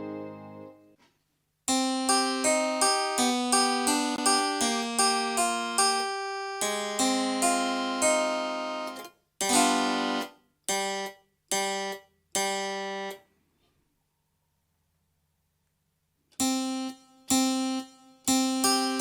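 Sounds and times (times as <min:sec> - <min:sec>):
keyboard piano notes and chords: 0:00.0 - 0:00.8.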